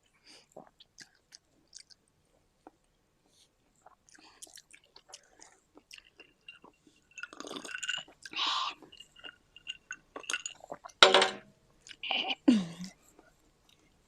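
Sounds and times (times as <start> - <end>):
close-up chewing food: 0.4 - 11.0.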